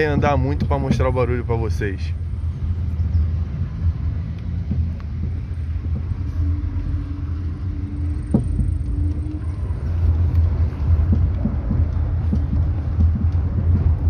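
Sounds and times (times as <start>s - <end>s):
car driving low rumble: 0.0s - 14.0s
suspension knocking: 0.0s - 14.0s.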